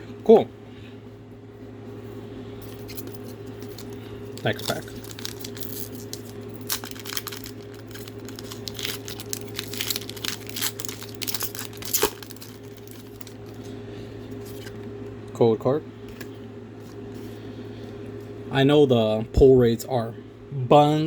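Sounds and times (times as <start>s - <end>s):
foil wrapper tearing and crinkling: 2.8s - 13.6s.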